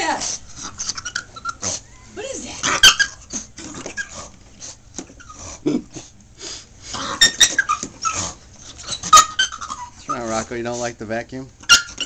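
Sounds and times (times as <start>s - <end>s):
dog whining: 0.0s - 4.4s, 5.0s - 6.2s, 6.9s - 10.5s, 11.6s - 12.0s
dog yipping: 0.8s - 4.2s, 7.0s - 10.4s, 11.6s - 12.0s
dog growling: 6.9s - 10.5s.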